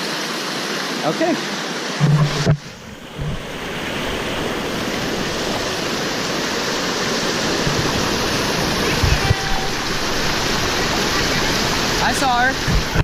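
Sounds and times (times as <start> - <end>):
waterfall rushing over rocks: 0.0 - 13.0
low thumps: 2.0 - 5.6, 7.4 - 12.0, 12.6 - 13.0.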